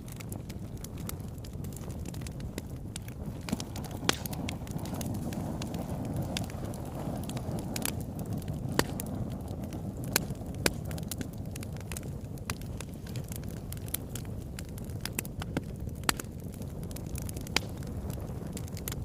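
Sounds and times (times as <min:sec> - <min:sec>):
fire crackling: 0:00.0 - 0:19.0
fire flame rushing: 0:00.0 - 0:19.0
wood fire popping: 0:00.0 - 0:19.0.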